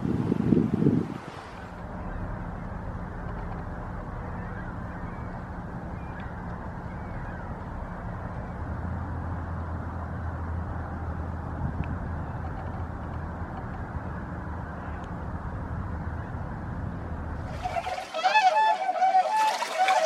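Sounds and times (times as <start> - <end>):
low hum: 1.5 - 20.0
waterfowl calling: 1.7 - 8.6, 17.4 - 20.0.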